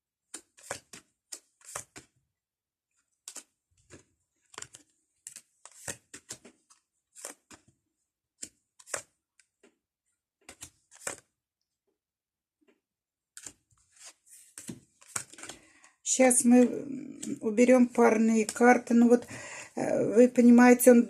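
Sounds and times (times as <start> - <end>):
playing cards slapping on table: 0.3 - 2.1, 3.2 - 7.7, 8.4 - 9.8, 10.4 - 11.3, 13.4 - 15.6.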